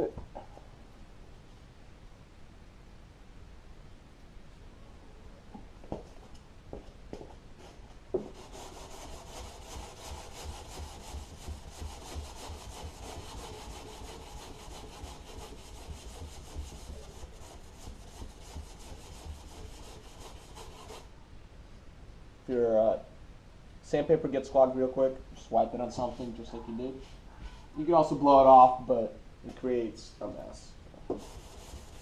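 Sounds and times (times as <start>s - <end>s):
sandpaper rubbing on metal panel: 8.3s - 21.1s, 31.2s - 32.0s.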